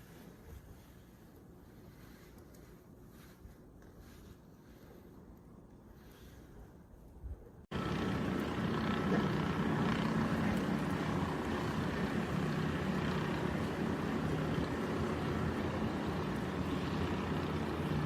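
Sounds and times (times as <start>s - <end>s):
motor running: 7.7s - 18.0s.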